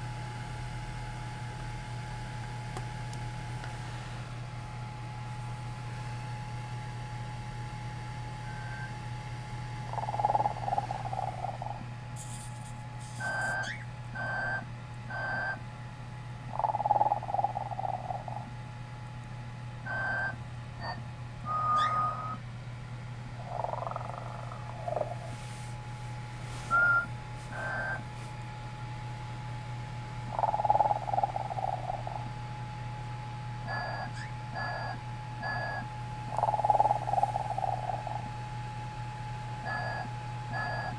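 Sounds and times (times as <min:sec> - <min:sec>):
steady low hum: 0:00.0 - 0:40.9
toy electronic snoring: 0:09.9 - 0:11.8, 0:16.5 - 0:18.5, 0:20.8 - 0:22.4, 0:23.4 - 0:25.3, 0:30.3 - 0:32.3, 0:34.6 - 0:38.3
whistling breaths: 0:20.9 - 0:22.4, 0:26.7 - 0:28.0.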